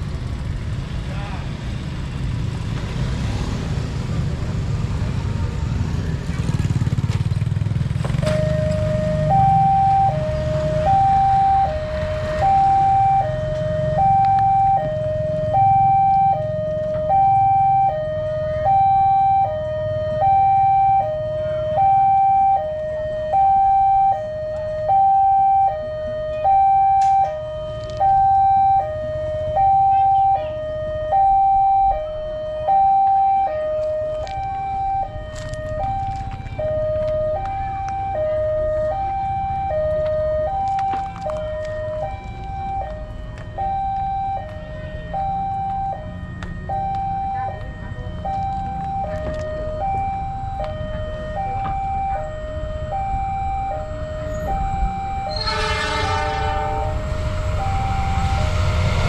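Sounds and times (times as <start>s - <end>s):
low vehicle rumble: 0.0s - 59.0s
level crossing warning siren: 3.6s - 59.0s.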